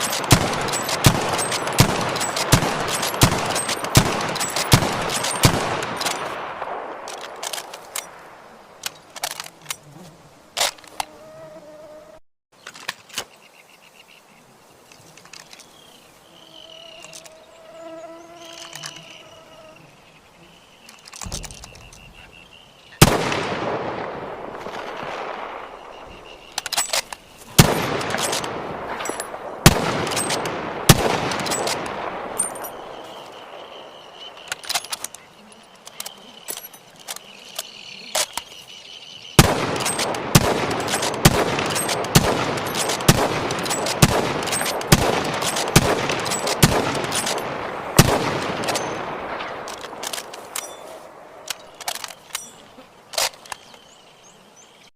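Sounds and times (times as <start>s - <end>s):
rifle shots with rolling echo: 0.0s - 8.4s, 23.0s - 35.1s, 39.4s - 52.5s.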